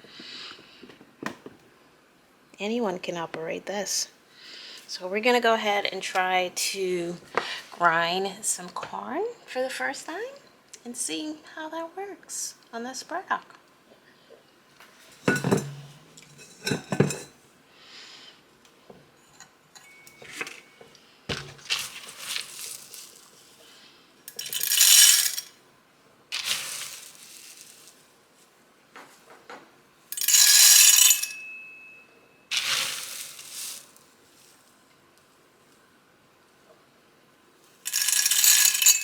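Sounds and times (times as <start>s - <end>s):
small clinks and knocks: 15.2s - 17.3s, 24.3s - 25.5s, 30.1s - 31.7s, 37.9s - 39.0s
corn kernels clattering into hopper: 21.3s - 23.3s, 24.3s - 25.5s, 26.4s - 27.9s, 30.2s - 31.3s, 32.5s - 34.0s, 37.9s - 39.0s.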